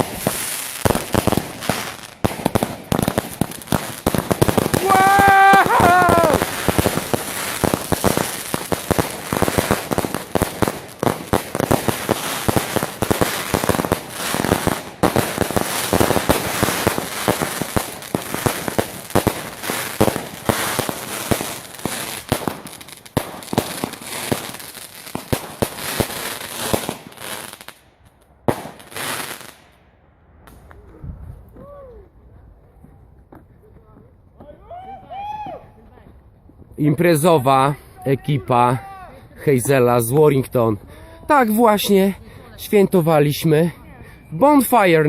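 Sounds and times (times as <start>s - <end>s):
fireworks bangs and crackling: 0.0s - 31.6s.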